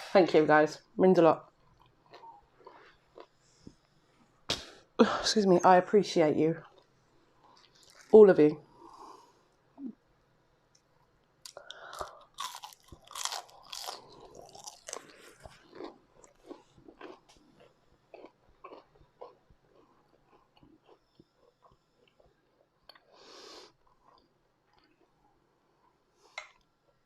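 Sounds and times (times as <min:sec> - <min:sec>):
person chewing crunchy food: 0:01.5 - 0:04.4, 0:06.7 - 0:08.1, 0:11.4 - 0:26.7.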